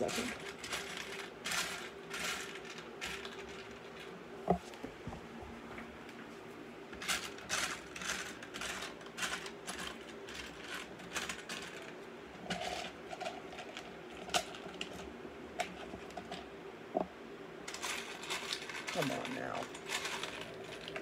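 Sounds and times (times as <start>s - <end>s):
plastic pieces rattling and clicking: 0.0s - 4.1s, 7.0s - 16.4s, 17.7s - 21.0s
faint steady hum: 0.0s - 21.0s.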